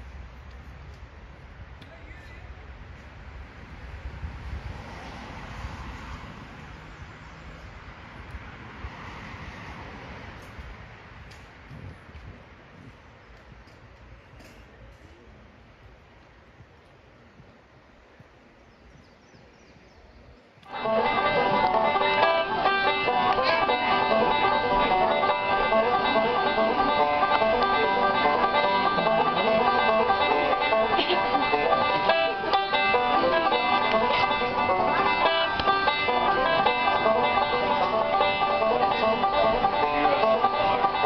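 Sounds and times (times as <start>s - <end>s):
bluegrass music with banjo: 20.6s - 41.0s.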